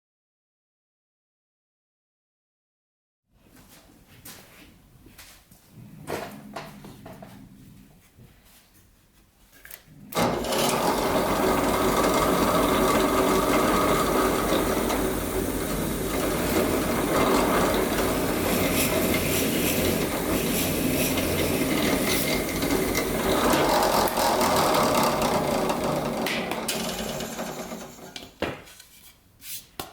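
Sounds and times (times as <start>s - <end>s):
power tool cutting plywood: 10.2s - 28.3s.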